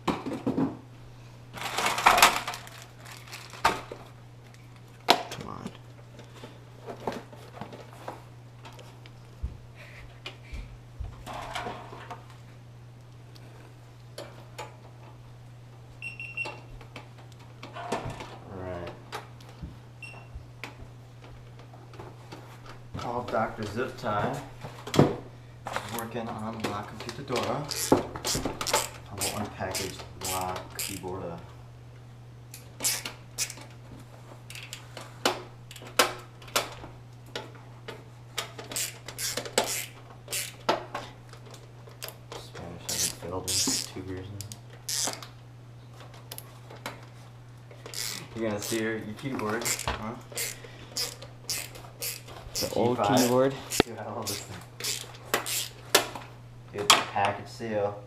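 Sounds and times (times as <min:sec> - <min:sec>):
packaging clicks and crackles: 0:01.6 - 0:03.8
hands handling computer parts: 0:01.6 - 0:04.7.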